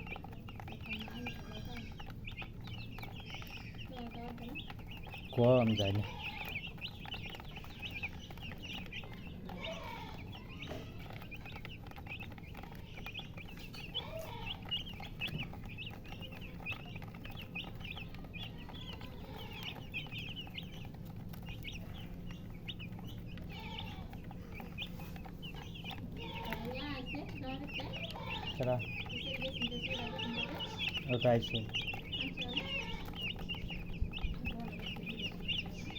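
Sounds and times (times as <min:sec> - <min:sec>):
chicks peeping: 0:00.0 - 0:35.9
hen clucking: 0:00.0 - 0:35.9.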